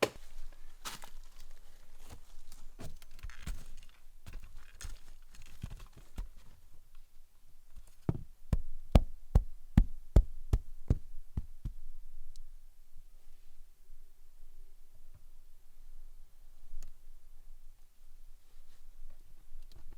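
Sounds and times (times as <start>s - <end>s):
rustling: 0.0s - 7.1s.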